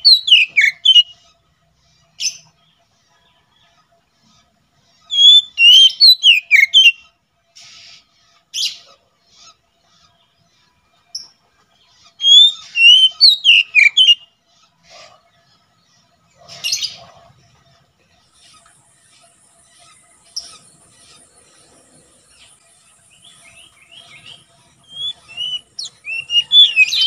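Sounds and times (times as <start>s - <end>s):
bird whistling song: 0.0s - 1.3s, 5.0s - 8.0s, 12.0s - 14.4s, 18.4s - 27.0s
harsh scratchy bird calls: 0.0s - 3.2s, 4.1s - 10.4s, 11.1s - 27.0s.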